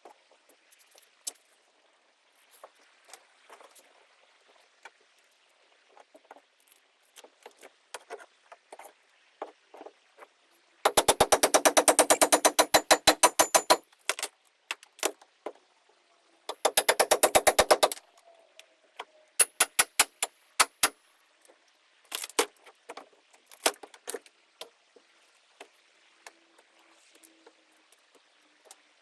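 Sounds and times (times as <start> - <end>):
rapid hammering: 10.9 - 14.2, 16.5 - 18.0, 19.4 - 21.2
single knocks and clatter: 10.9 - 14.2, 16.5 - 18.0, 19.4 - 21.2.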